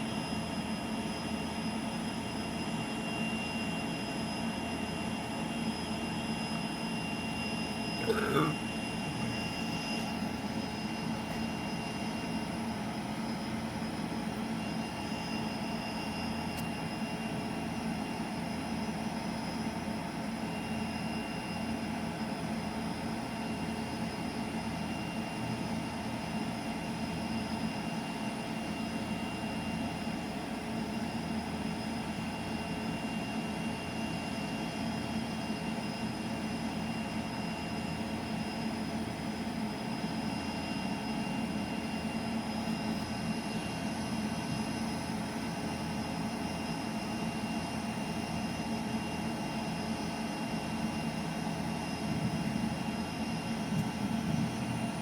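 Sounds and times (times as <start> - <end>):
faint high whine: 0.0 - 55.0.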